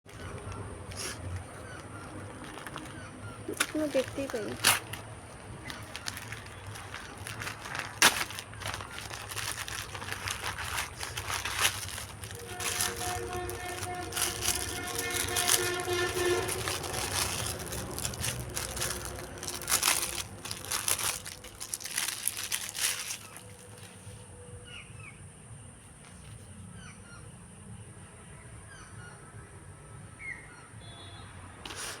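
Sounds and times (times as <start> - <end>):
crackling and rustling: 0.0 - 24.3.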